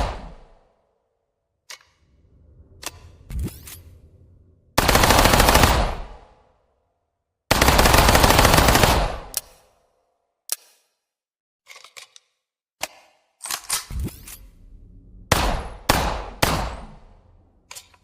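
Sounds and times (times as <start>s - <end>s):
submachine gun automatic bursts: 4.8s - 6.0s, 7.5s - 9.3s.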